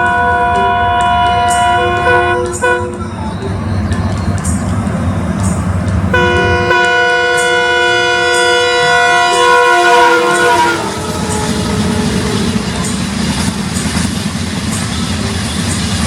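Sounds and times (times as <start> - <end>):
locomotive horn: 0.0 - 3.1, 6.1 - 14.1
train rumbling on track: 0.0 - 16.0.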